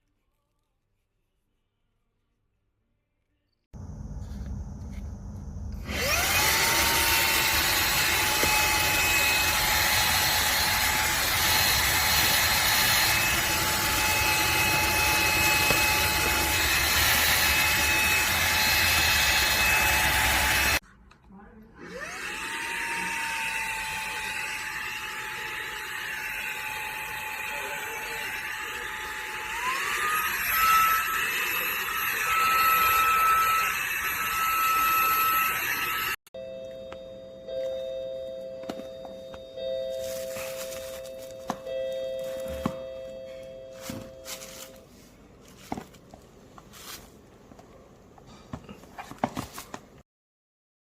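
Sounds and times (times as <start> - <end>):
cordless vacuum motor whining: 5.7 - 20.8, 21.8 - 36.2.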